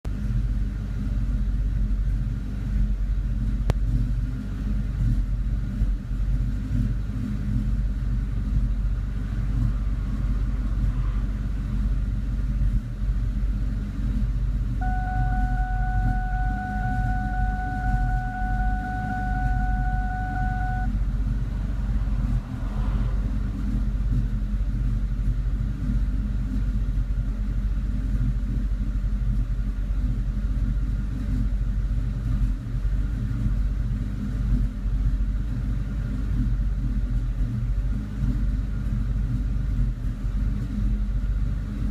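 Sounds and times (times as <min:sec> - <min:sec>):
car engine idling unevenly: 0:00.1 - 0:41.9
steady tone: 0:14.8 - 0:21.0.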